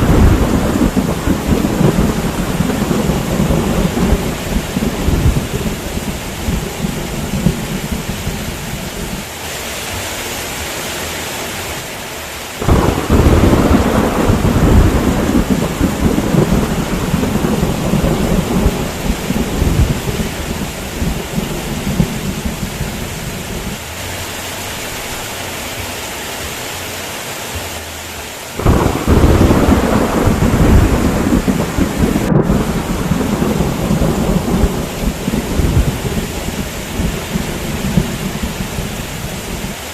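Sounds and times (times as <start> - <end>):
rolling thunder: 0.0 - 9.3, 12.6 - 23.8, 28.6 - 39.9
heavy rain: 0.0 - 39.9.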